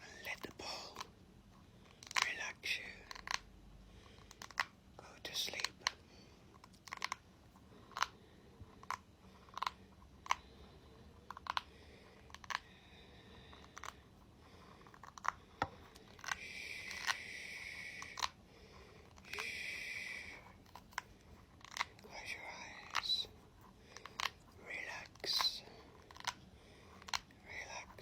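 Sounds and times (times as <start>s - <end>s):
scratchy rubbing on ball: 0.0s - 28.0s.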